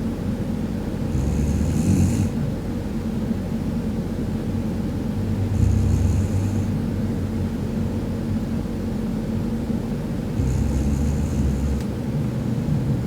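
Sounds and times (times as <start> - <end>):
woman snoring: 1.1 - 2.4, 5.4 - 6.8, 10.4 - 12.7.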